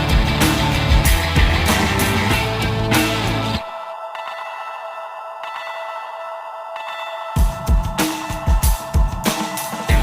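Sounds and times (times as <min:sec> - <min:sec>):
loud band music: 0:00.0 - 0:03.6.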